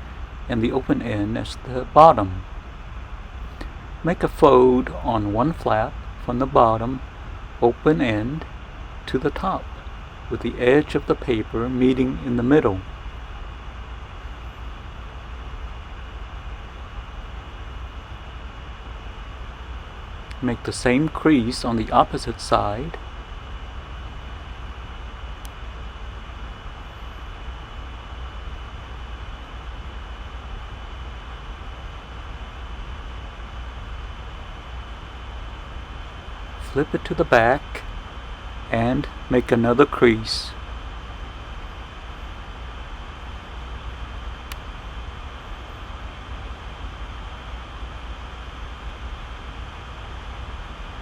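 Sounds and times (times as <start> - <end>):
background hiss: 0.0 - 23.2, 36.4 - 46.2
constant low hum: 0.0 - 51.0
faint high whine: 0.0 - 51.0.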